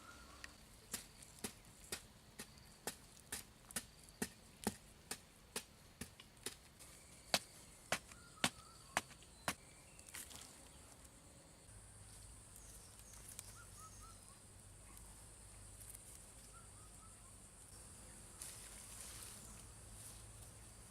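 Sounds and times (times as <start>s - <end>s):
faint bird chirps: 6.8s - 11.0s, 12.0s - 15.2s, 16.1s - 18.5s.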